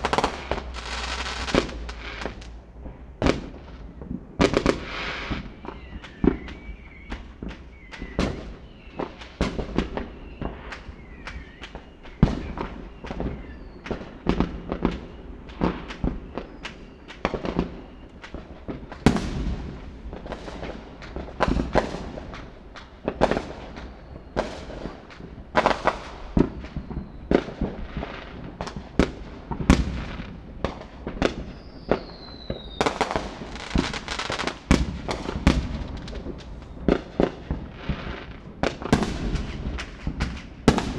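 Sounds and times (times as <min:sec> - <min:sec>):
fireworks bangs and crackles: 0:00.0 - 0:40.9
falling whistles: 0:04.8 - 0:14.0, 0:31.4 - 0:34.5.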